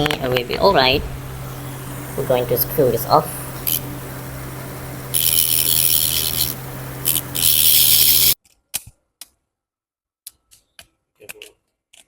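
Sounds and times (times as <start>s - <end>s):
screwdriver grinding on screws: 5.1s - 8.4s.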